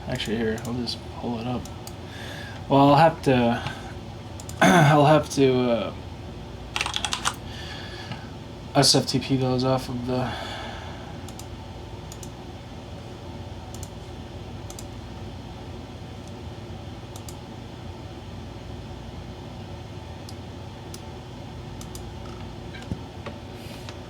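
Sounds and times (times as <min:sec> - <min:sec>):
steady low hum: 0:00.0 - 0:24.0
computer keyboard keystrokes: 0:06.8 - 0:07.4, 0:11.3 - 0:11.5, 0:12.1 - 0:12.4, 0:13.7 - 0:14.0, 0:14.6 - 0:14.9, 0:17.1 - 0:17.4, 0:21.8 - 0:22.1.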